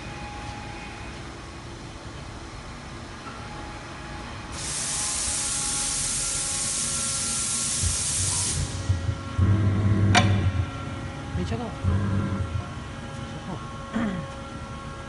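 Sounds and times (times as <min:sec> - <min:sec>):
air hissing: 0:04.5 - 0:09.3.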